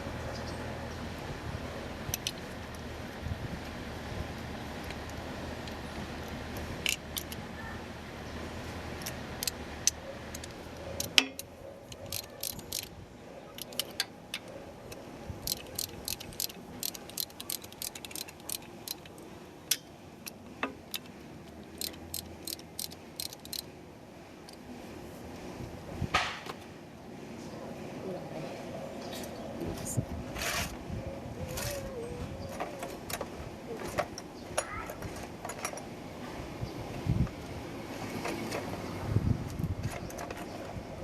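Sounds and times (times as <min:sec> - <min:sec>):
small metal tools clinking: 0:10.4 - 0:12.9.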